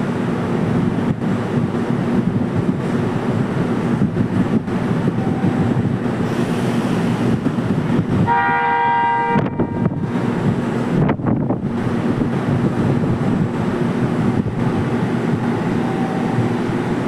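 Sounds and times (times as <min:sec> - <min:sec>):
train rumble: 0:00.0 - 0:17.0
wind: 0:00.0 - 0:17.0
train horn: 0:05.2 - 0:05.8, 0:08.2 - 0:10.0.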